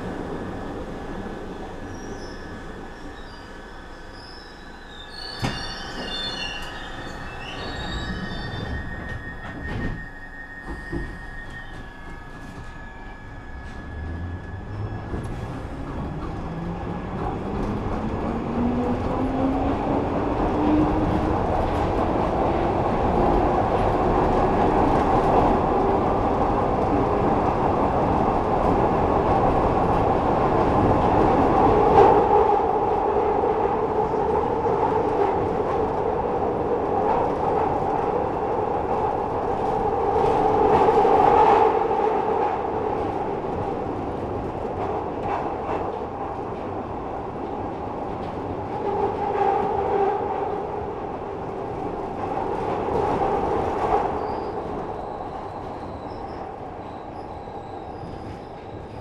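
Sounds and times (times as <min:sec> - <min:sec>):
wheels rumbling on rail: 0:04.2 - 0:59.0.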